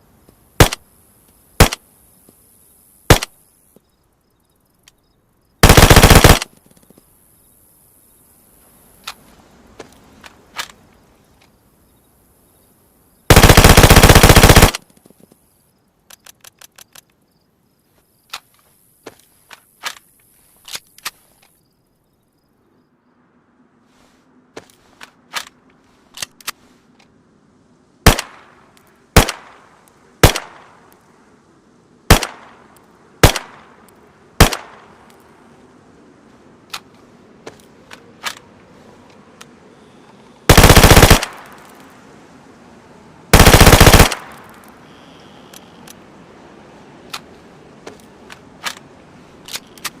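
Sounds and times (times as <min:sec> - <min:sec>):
submachine gun single shots: 0:00.6 - 0:00.8, 0:01.6 - 0:01.8, 0:03.1 - 0:03.4, 0:05.6 - 0:06.5, 0:13.3 - 0:14.8, 0:28.0 - 0:28.5, 0:29.2 - 0:29.6, 0:30.2 - 0:30.7, 0:32.1 - 0:32.6, 0:33.2 - 0:33.7, 0:34.4 - 0:34.9, 0:40.5 - 0:41.7, 0:43.3 - 0:44.6
full-automatic gun bursts: 0:05.6 - 0:06.5, 0:13.3 - 0:14.8, 0:40.5 - 0:41.6, 0:43.3 - 0:44.4
faint clicks: 0:14.8 - 0:17.3, 0:44.1 - 0:46.0.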